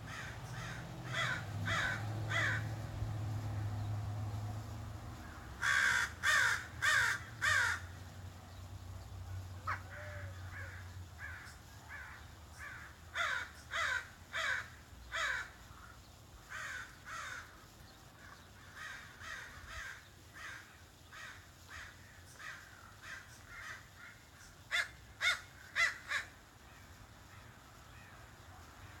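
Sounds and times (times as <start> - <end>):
crow cawing: 0.0 - 2.7, 5.2 - 8.0, 9.6 - 17.6, 18.3 - 26.4.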